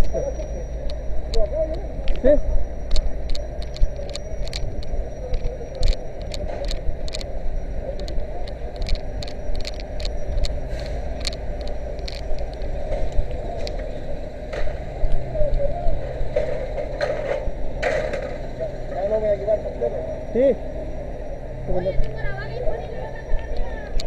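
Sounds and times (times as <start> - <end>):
fire engine motor rumbling: 0.0 - 24.0
sharp clicks and knocks: 0.8 - 7.3, 8.0 - 13.9, 16.3 - 18.7.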